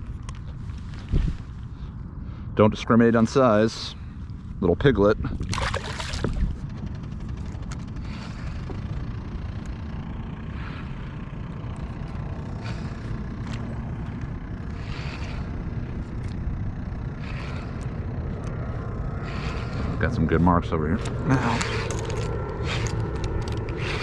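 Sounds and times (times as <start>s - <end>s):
wind buffeting microphone: 0.9s - 1.8s, 5.0s - 7.4s
water swishes: 5.5s - 6.6s.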